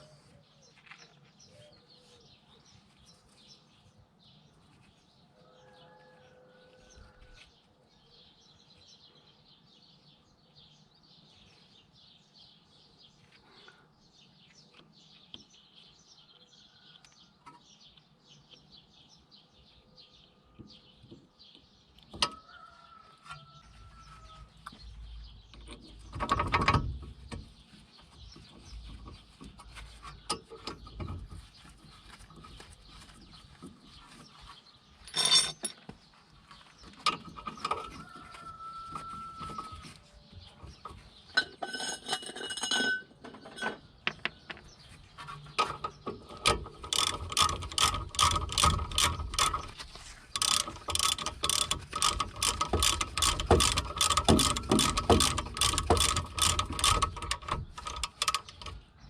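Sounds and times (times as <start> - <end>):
metal tool clinks and knocks: 35.0 - 35.9, 41.3 - 44.6
ratchet wrench clicking: 46.4 - 49.7, 50.3 - 58.8.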